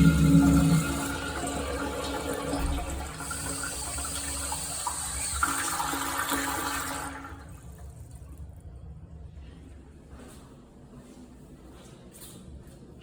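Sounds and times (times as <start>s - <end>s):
toilet flushing: 0.0s - 8.6s.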